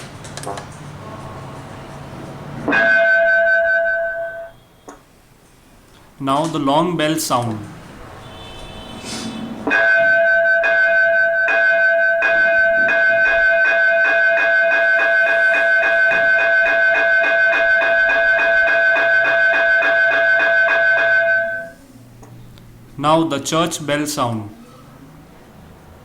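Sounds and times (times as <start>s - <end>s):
electronic school bell ringing: 2.7s - 4.8s, 9.7s - 21.8s.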